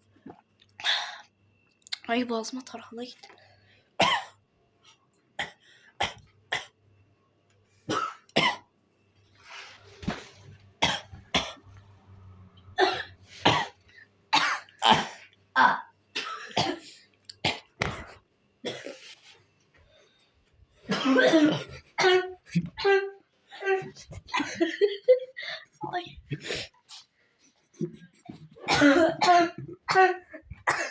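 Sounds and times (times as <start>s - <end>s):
person coughing hard: 4.0s - 4.4s, 7.9s - 8.7s, 10.8s - 11.7s, 12.8s - 13.8s, 14.4s - 19.0s, 20.9s - 23.1s, 28.6s - 30.9s.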